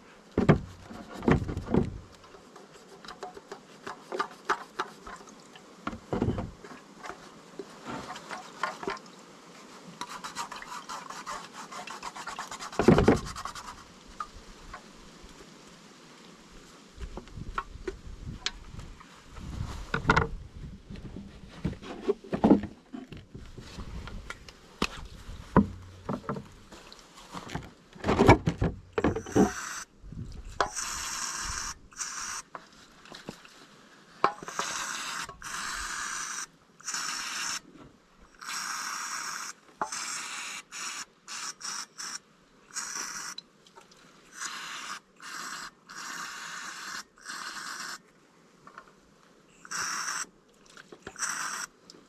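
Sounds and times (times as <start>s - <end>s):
short hissing bursts: 29.0s - 29.9s, 30.6s - 32.5s, 34.3s - 37.7s, 38.4s - 43.4s, 44.3s - 48.0s, 49.5s - 50.3s, 51.1s - 51.7s.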